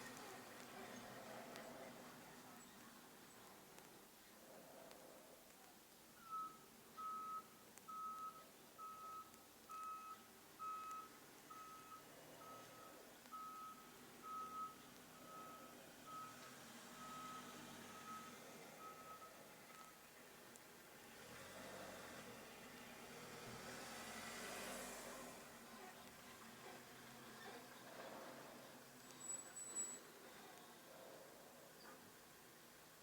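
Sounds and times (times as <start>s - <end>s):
faint reversing alarm beeping: 6.2s - 20.1s, 29.1s - 30.2s.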